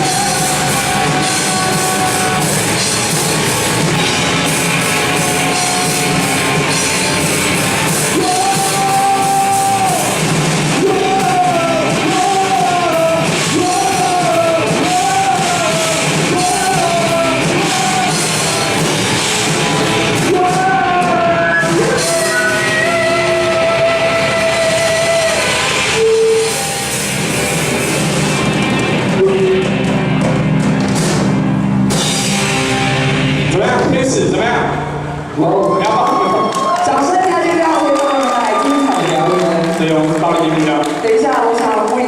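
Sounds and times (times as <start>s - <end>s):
rock band playing loudly: 0.0s - 42.0s.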